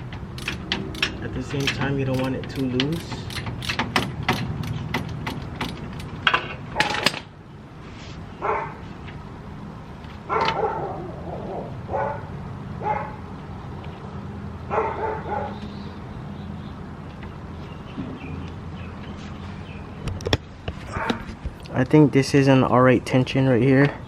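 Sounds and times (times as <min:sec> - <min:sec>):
sharp metallic clicks: 0:00.0 - 0:06.4
dog barking: 0:08.4 - 0:08.8, 0:10.3 - 0:11.1, 0:11.9 - 0:13.2, 0:14.7 - 0:15.6, 0:20.9 - 0:21.3.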